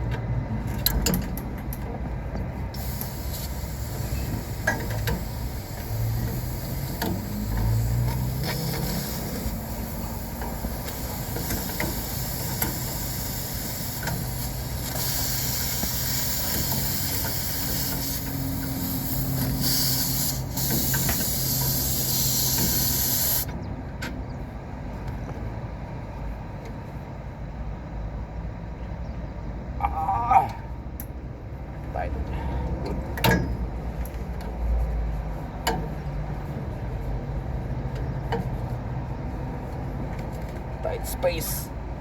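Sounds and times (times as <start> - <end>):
gas hissing: 2.7 - 23.5.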